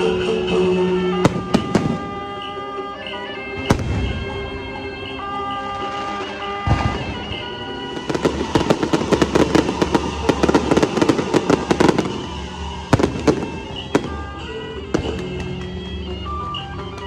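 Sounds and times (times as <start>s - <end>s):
procession music with reed instrument: 0.0s - 17.0s
firecrackers crackling: 0.8s - 2.5s, 3.6s - 17.0s
loud bangs: 1.2s - 2.4s, 3.6s - 5.0s.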